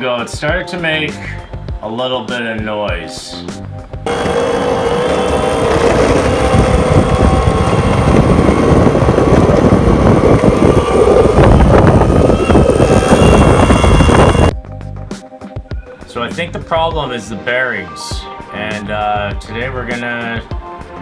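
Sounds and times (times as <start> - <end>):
electric skateboard wheels rumbling: 4.0 - 14.6.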